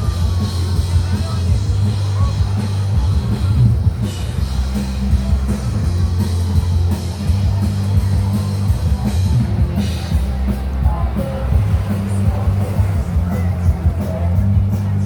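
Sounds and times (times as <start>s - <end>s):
drums: 0.0s - 15.0s
heavy bass line: 0.0s - 15.0s
faint singing: 9.8s - 15.0s.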